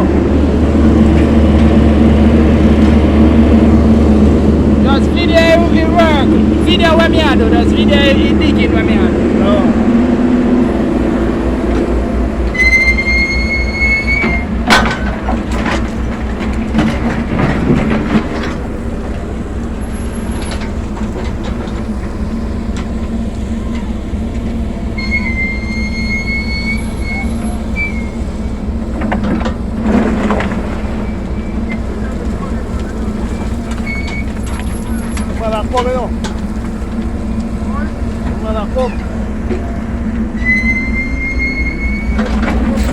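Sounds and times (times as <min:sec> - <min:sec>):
backhoe diesel engine running: 0:00.0 - 0:42.9
long high squeal: 0:10.5 - 0:14.6, 0:24.8 - 0:28.7, 0:40.2 - 0:42.5
knocks and clanks: 0:10.6 - 0:40.7, 0:42.0 - 0:42.9.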